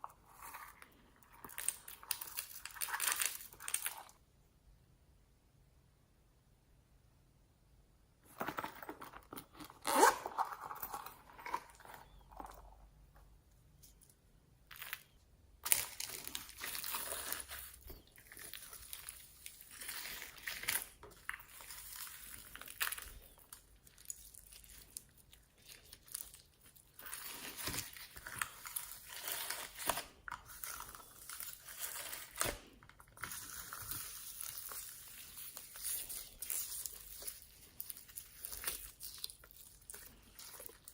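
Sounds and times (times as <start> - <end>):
hands squishing slime: 14.8 - 40.9.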